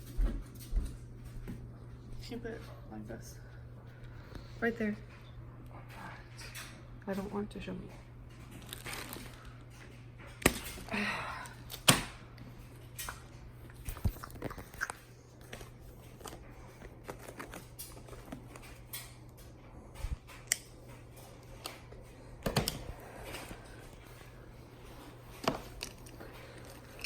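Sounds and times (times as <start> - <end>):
steady low hum: 0.0 - 27.0
packaging rustle: 8.5 - 9.6.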